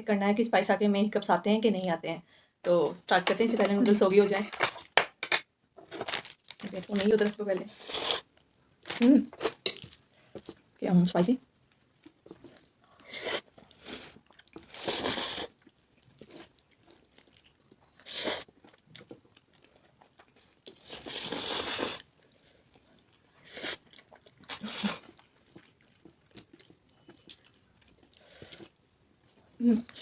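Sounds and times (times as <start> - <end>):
slurping noodles: 7.7 - 8.3, 12.4 - 15.6, 17.9 - 18.5, 20.7 - 22.1, 23.3 - 23.8
quiet chewing: 8.0 - 10.9, 11.5 - 30.0.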